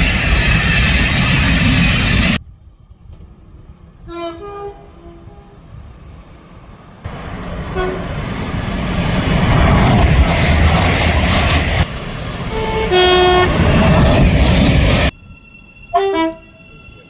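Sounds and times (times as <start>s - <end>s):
passing train rumble: 0.0s - 17.0s
train noise: 0.0s - 17.0s
short train horn toot: 4.1s - 5.6s, 7.8s - 8.1s, 12.5s - 13.5s, 15.9s - 16.6s
two-note train horn: 4.1s - 5.6s, 7.8s - 8.0s, 12.5s - 13.5s, 15.9s - 16.7s.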